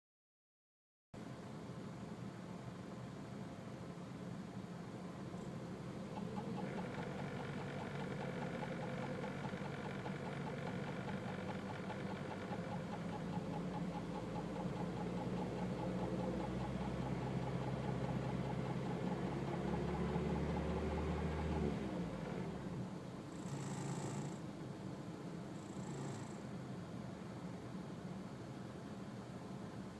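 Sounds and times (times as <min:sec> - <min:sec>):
car engine running above idle: 0:05.2 - 0:23.3
fast even engine knocking: 0:06.1 - 0:22.7.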